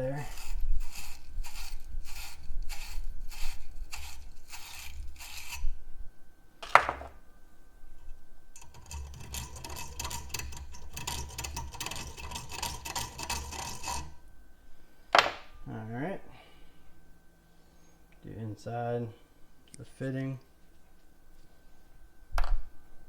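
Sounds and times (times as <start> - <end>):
abrasive scrubbing copper pipe: 0.0 - 5.8, 8.6 - 14.2.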